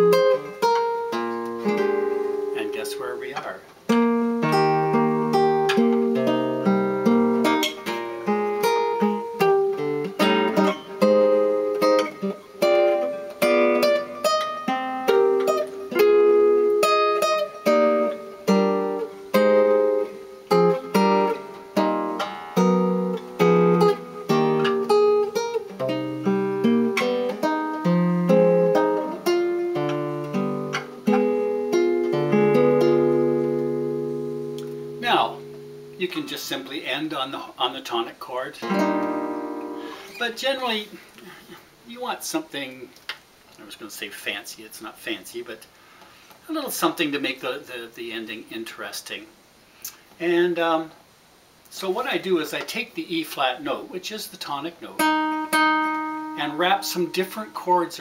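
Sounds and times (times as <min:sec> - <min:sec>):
solo jazz guitar chords: 0:00.0 - 0:37.8, 0:38.4 - 0:41.8, 0:54.5 - 0:58.0.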